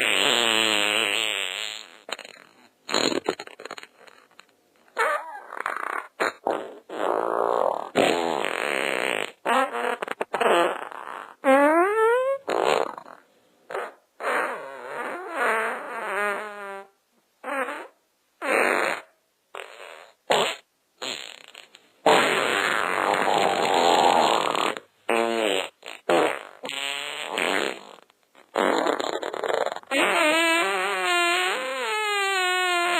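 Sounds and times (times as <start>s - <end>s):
fart sounds: 0.0s - 32.9s.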